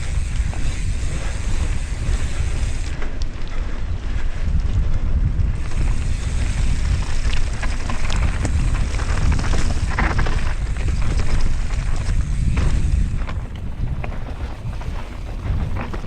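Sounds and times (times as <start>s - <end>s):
bike rattling and clicking: 0.0s - 16.0s
wind buffeting microphone: 0.0s - 16.0s.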